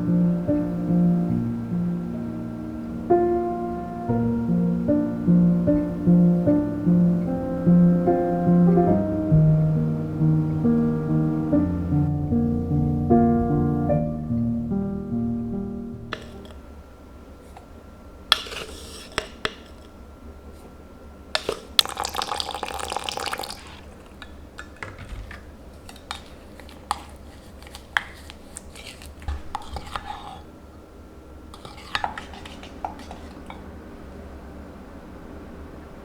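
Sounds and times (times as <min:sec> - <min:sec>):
dishes and utensils clinking: 0:16.1 - 0:16.6, 0:31.6 - 0:33.6.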